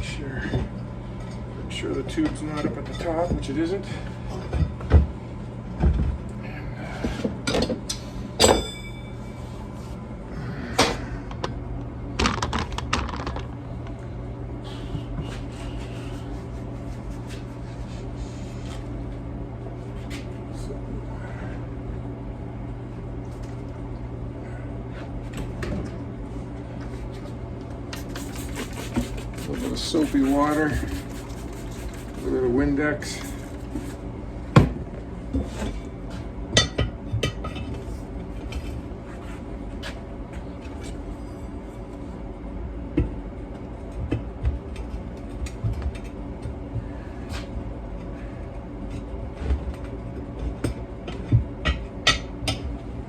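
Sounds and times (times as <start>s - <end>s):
steady low hum: 0.0s - 53.0s
ringing metallic clang: 8.4s - 9.2s.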